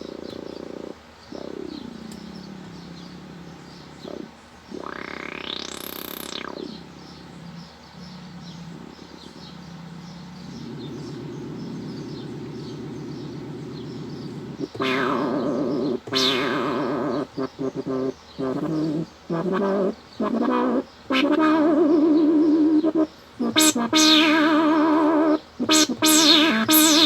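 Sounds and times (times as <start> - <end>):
pulsing synthesizer tone: 4.7 - 7.0, 23.4 - 27.0
sharp synthesizer notes: 25.6 - 27.0
synthesizer sweep: 25.7 - 27.0.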